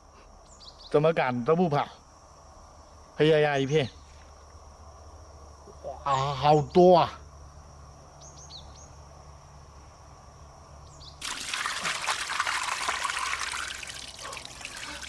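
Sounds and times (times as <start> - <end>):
water pouring and splashing: 11.2 - 15.0.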